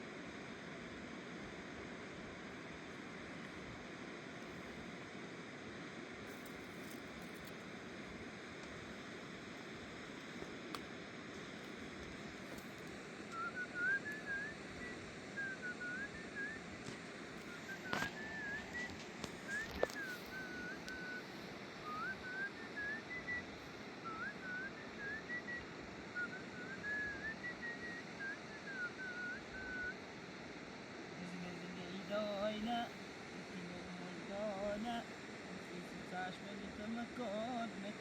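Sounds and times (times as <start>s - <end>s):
person whistling a tune: 13.3s - 16.6s, 17.5s - 21.2s, 21.8s - 30.0s.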